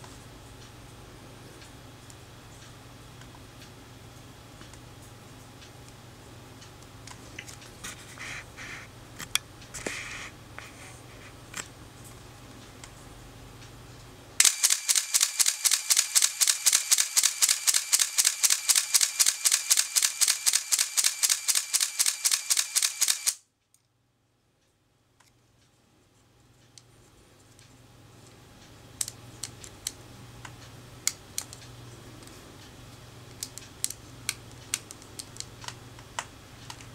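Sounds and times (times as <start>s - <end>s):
camera motor drive firing burst: 14.4s - 23.4s.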